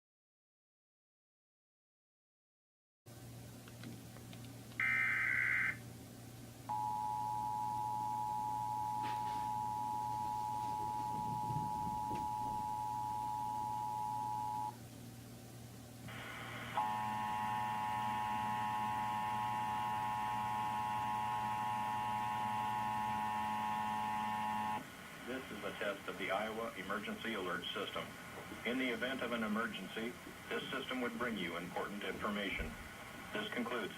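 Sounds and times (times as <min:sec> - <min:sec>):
two-tone attention signal: 0:06.7 - 0:14.7.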